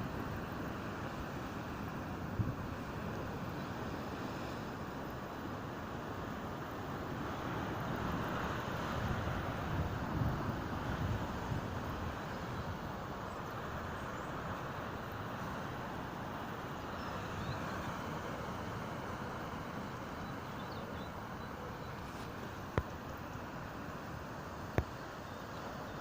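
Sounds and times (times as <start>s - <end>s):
sea waves washing on shore: 0.0s - 26.0s
faint bird chirps: 20.1s - 23.0s.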